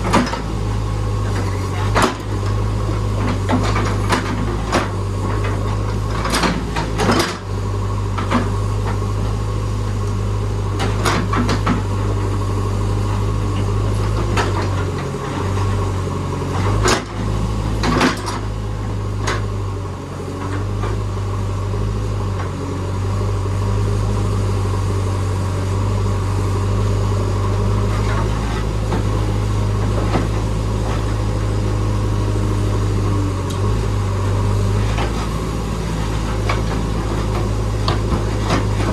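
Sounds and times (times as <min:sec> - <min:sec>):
diesel engine humming: 0:00.0 - 0:38.9
digging bucket knocks and clanks: 0:36.3 - 0:38.9.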